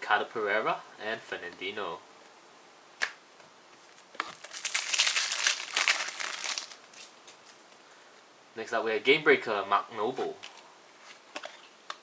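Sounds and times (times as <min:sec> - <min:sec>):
packet wrapper crinkling and tearing: 0:04.2 - 0:07.2.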